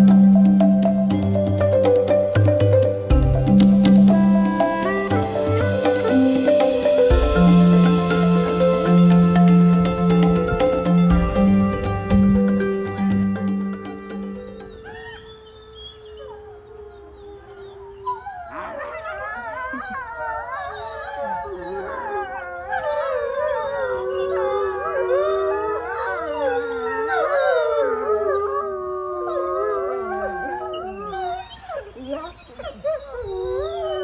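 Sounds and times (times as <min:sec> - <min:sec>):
wolves howling: 0:00.0 - 0:34.0.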